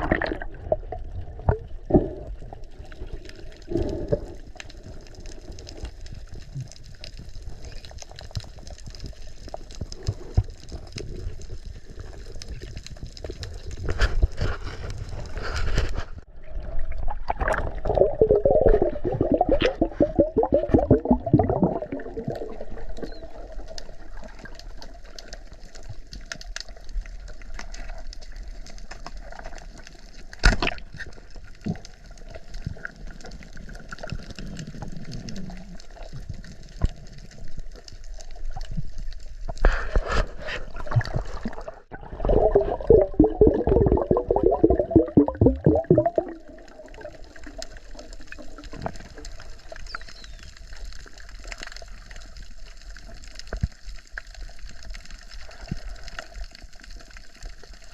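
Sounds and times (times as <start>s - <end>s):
water gurgling and rushing: 0.0s - 5.0s, 16.3s - 24.8s, 40.6s - 50.4s
rapid bubbling: 0.0s - 53.2s.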